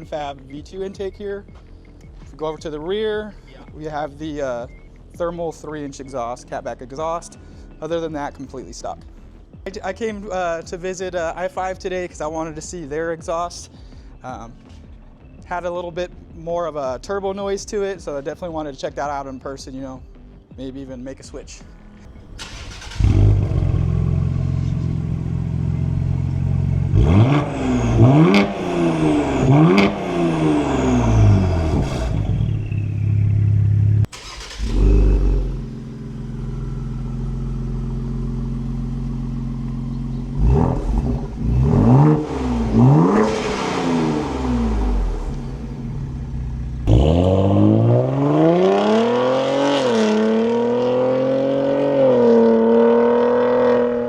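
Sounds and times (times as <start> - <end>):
car engine idling: 22.1 - 47.3
car accelerating away: 22.1 - 54.0
engine revving: 22.1 - 54.0.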